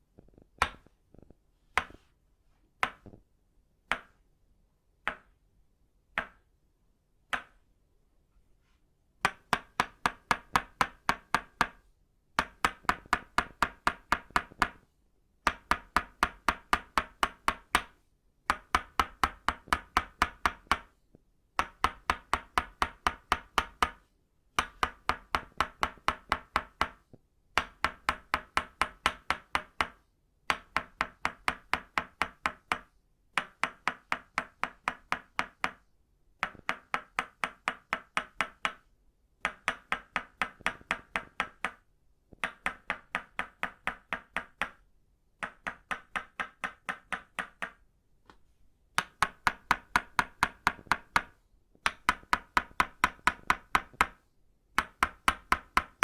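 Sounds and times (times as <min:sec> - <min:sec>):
wooden mallet tapping wooden stake: 0:49.0 - 0:54.2.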